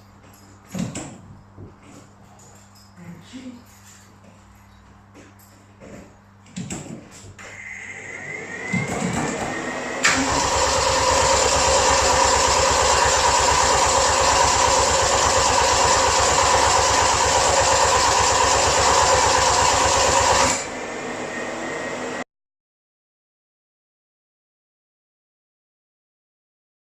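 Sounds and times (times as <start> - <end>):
engine cranking on starter motor: 7.6 - 20.7.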